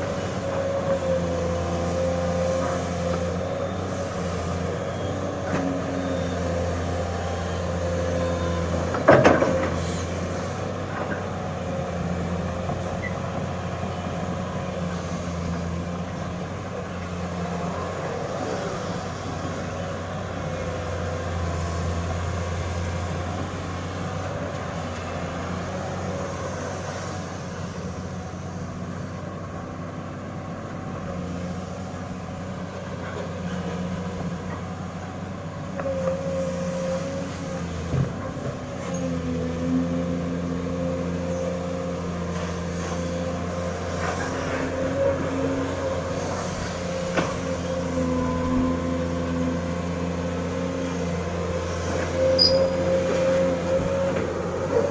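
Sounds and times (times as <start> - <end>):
excavator diesel engine running: 0.0 - 54.9
hydraulics whining: 34.3 - 54.9.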